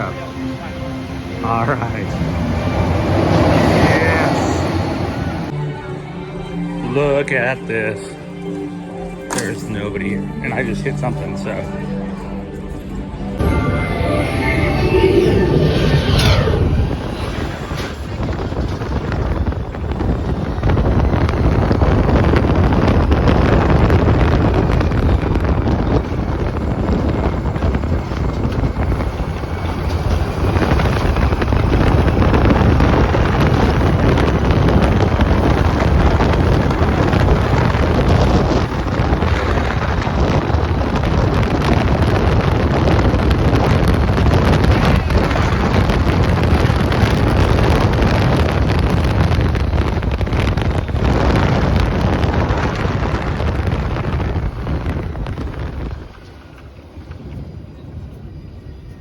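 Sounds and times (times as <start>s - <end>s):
faint rising whine: 0.0s - 5.5s, 13.4s - 18.3s
ride vehicle rumbling at speed: 0.0s - 5.6s, 10.8s - 59.0s
wind rushing over microphone: 0.0s - 5.6s, 12.9s - 59.0s.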